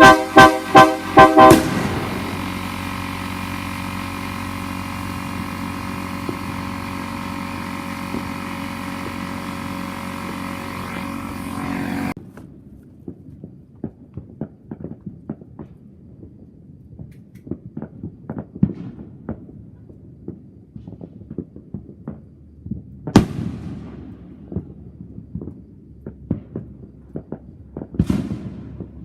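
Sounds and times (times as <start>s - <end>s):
locomotive air horn blasts: 0.0s - 12.2s.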